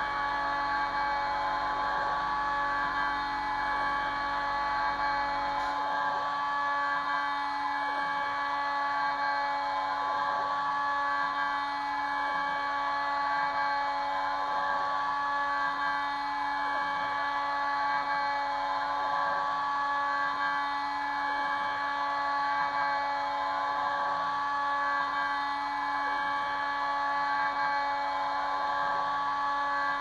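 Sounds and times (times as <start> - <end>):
router spindle whine: 0.0 - 30.0.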